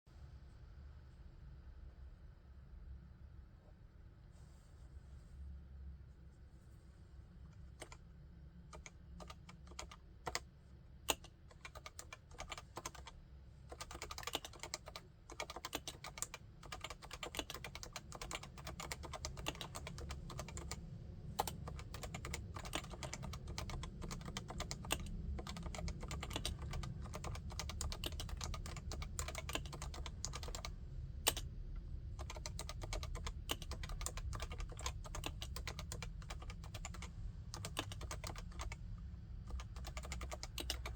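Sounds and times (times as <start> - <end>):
typing on keyboard: 7.8 - 8.0, 8.7 - 10.4, 11.1 - 20.8, 21.4 - 31.5, 32.2 - 38.8, 39.5 - 40.9.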